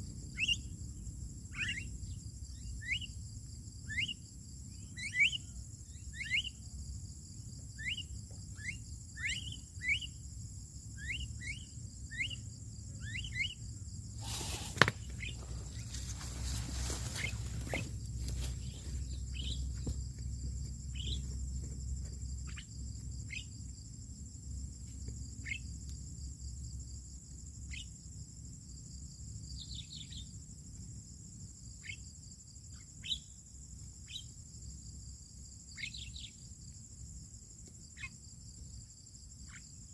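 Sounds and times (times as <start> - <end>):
high insect chorus: 0.0 - 39.9
rustling noise: 14.2 - 20.1.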